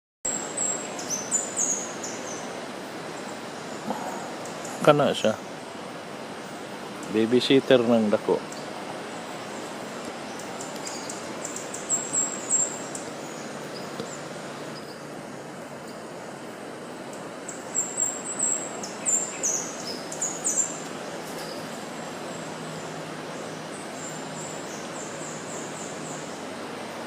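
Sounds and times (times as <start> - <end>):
birds chirping: 0.3 - 27.0
rushing outdoor background: 0.3 - 27.0.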